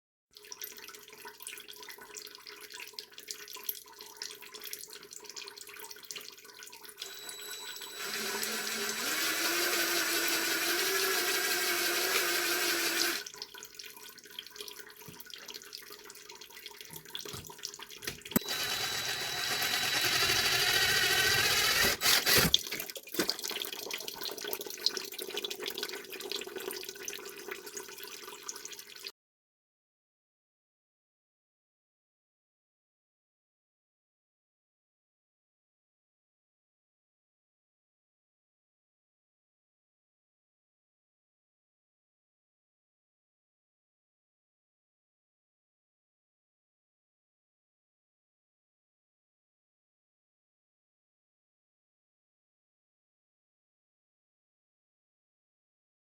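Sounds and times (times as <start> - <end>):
impact driver whining: 7.0 - 13.2, 18.3 - 22.6.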